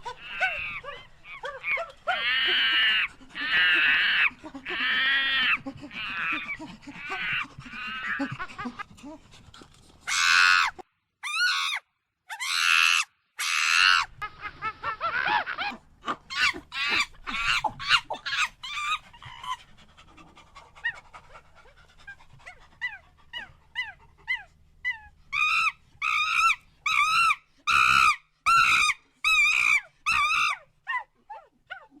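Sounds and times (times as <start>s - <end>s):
monkey repeated calls: 0.0s - 8.8s, 10.1s - 14.1s, 14.8s - 19.6s, 25.3s - 31.0s
monkeys screeching and chattering: 0.0s - 8.8s, 14.8s - 19.6s, 25.3s - 30.6s.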